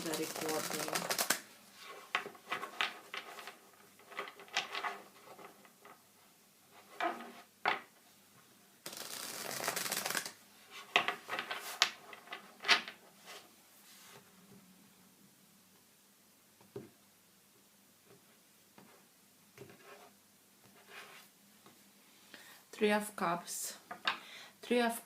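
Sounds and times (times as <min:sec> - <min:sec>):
cards tapping and flicking: 0:00.0 - 0:01.4, 0:08.9 - 0:10.4
cards being shuffled: 0:00.0 - 0:05.6, 0:08.8 - 0:13.0.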